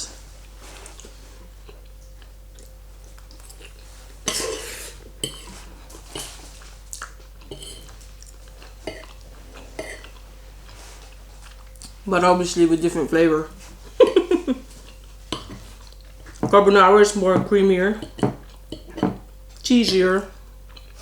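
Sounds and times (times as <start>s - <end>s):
chewing close up: 0.8s - 3.9s, 5.2s - 12.0s.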